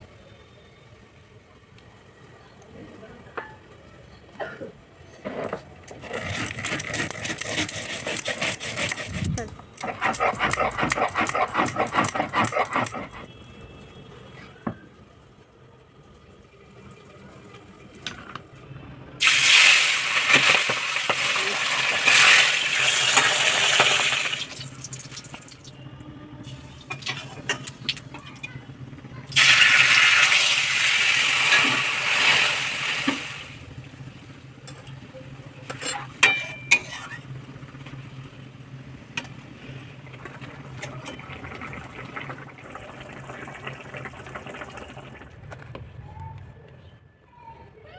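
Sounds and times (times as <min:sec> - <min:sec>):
hissing in a hot pan: 0:19.2 - 0:25.1, 0:29.3 - 0:33.6
utensils clinking against pot: 0:35.6 - 0:37.2.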